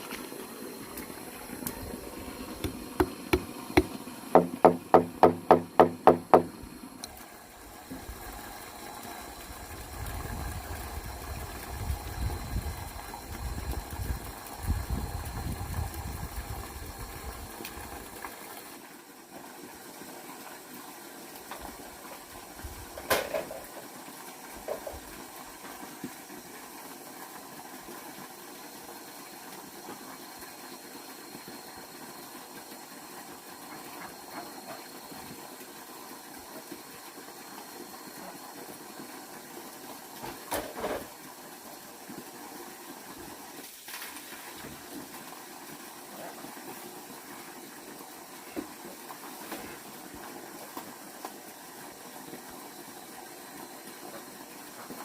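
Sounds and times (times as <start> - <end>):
hammer blows on bamboo: 2.6 - 6.5.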